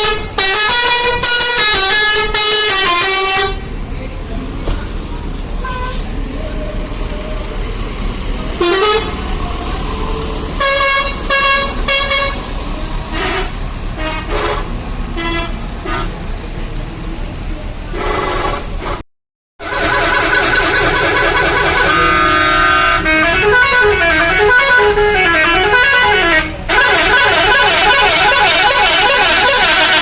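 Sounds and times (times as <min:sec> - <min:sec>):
musical air horn tooting: 0:00.0 - 0:03.7, 0:05.6 - 0:06.1, 0:08.6 - 0:09.2, 0:10.6 - 0:12.5, 0:13.1 - 0:16.1, 0:19.6 - 0:30.0
street noise: 0:00.0 - 0:19.0, 0:19.6 - 0:30.0.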